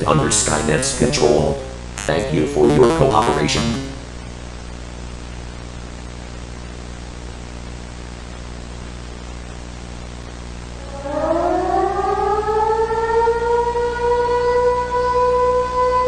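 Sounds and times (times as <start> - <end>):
static hiss: 0.0 - 11.4
low hum: 0.0 - 16.0
air-raid siren wailing: 10.8 - 16.0.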